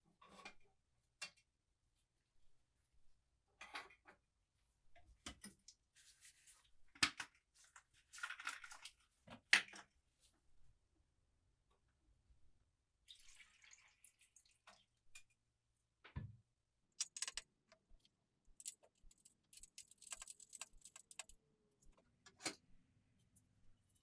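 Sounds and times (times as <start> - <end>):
metal parts clicking and clinking: 17.0 - 17.4, 18.6 - 21.4.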